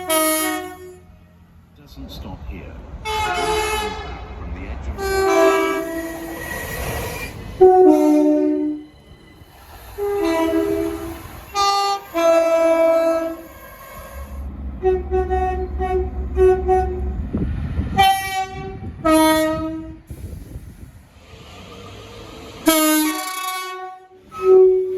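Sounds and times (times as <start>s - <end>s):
train horn blasts: 0.0s - 1.3s, 3.0s - 4.3s, 5.0s - 8.9s, 10.0s - 17.3s, 17.9s - 20.1s, 22.6s - 24.9s
passing train rumble: 0.0s - 24.9s.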